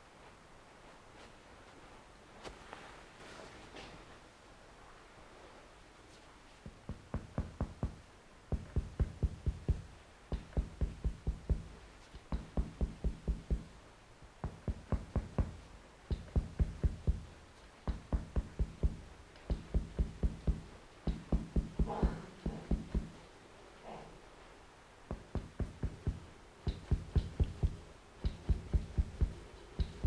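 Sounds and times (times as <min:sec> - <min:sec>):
hammer knocking on body: 0:06.7 - 0:13.8, 0:14.4 - 0:23.3, 0:25.1 - 0:30.0.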